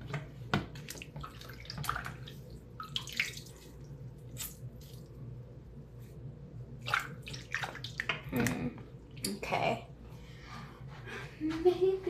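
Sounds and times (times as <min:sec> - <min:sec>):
bath water splashing and dripping: 0:00.0 - 0:05.3, 0:06.8 - 0:09.4.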